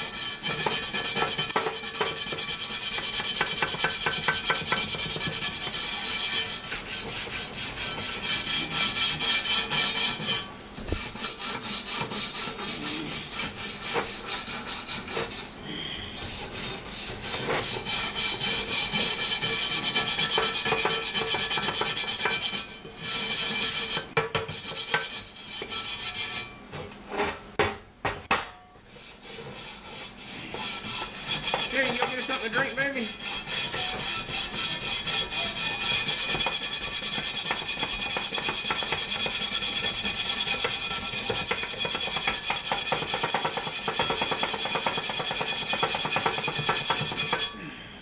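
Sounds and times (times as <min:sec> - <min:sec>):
power grinder grinding steel: 0:30.4 - 0:47.5.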